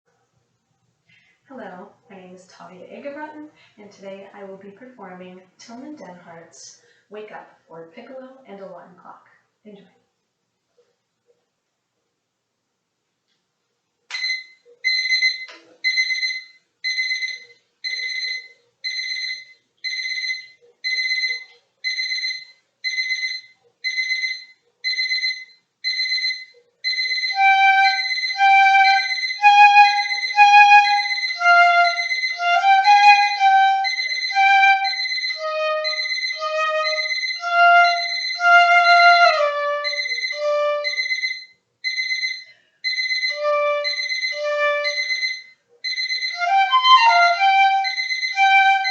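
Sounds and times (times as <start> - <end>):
digital alarm clock beeping: 14.1 - 48.9
piccolo melody: 27.0 - 41.4, 43.2 - 45.4, 46.2 - 48.9.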